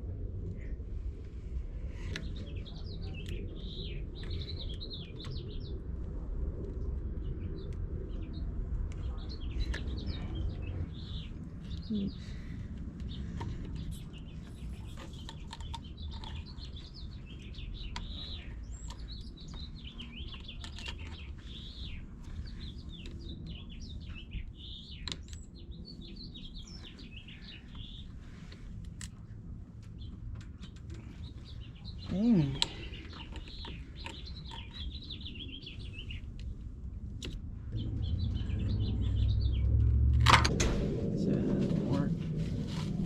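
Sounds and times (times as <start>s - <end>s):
low rumble: 0.0s - 15.3s, 34.8s - 43.0s
small birds chirping: 0.3s - 40.1s, 41.2s - 43.0s.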